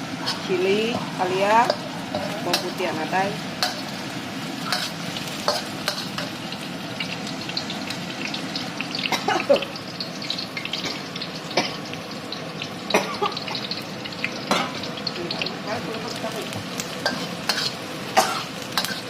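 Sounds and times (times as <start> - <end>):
food sizzling in hot oil: 0.0 - 19.0
spatula scraping a pan: 4.6 - 6.4, 17.0 - 17.8.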